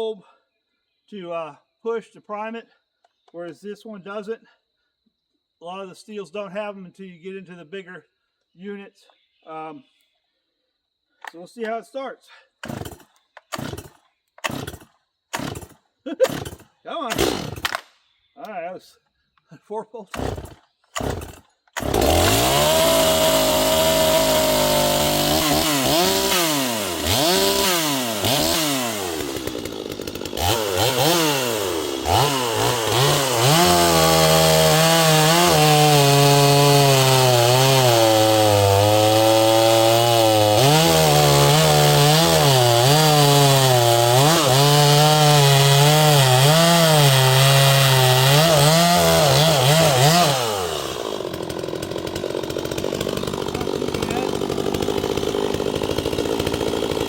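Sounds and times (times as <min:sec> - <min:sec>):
chainsaw revving and cutting: 0:12.6 - 0:17.8, 0:20.1 - 0:57.0.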